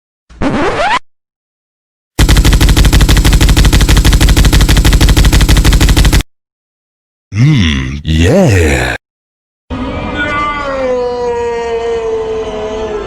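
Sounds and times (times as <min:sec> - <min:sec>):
minigun rapid fire: 0:02.2 - 0:06.3.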